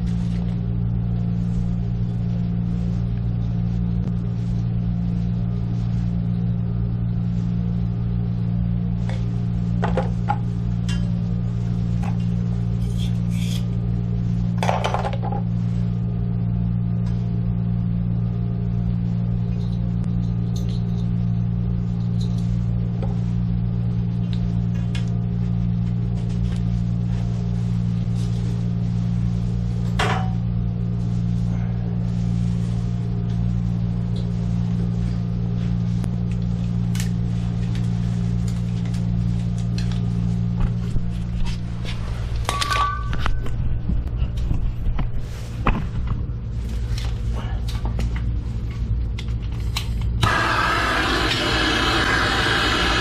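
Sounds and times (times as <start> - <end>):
low mechanical hum: 0.0 - 53.0.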